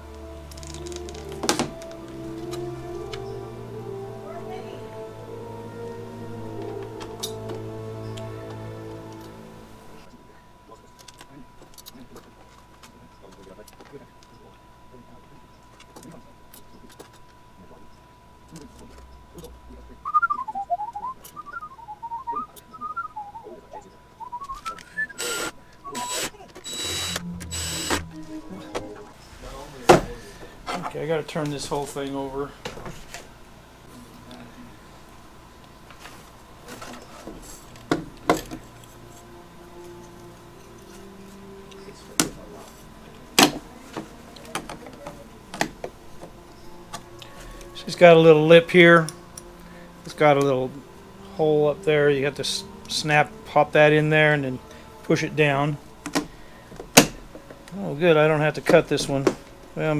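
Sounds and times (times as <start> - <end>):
faint steady high tone: 0.0 - 12.2, 12.8 - 32.8, 33.8 - 56.7
faint steady hum: 0.0 - 59.9
person whistling a tune: 20.0 - 29.1.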